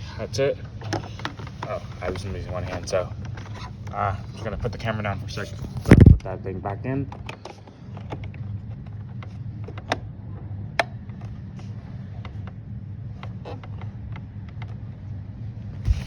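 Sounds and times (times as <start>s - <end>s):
steady low hum: 0.0s - 16.0s
plastic clicks and creaks: 0.6s - 6.3s, 7.1s - 10.1s.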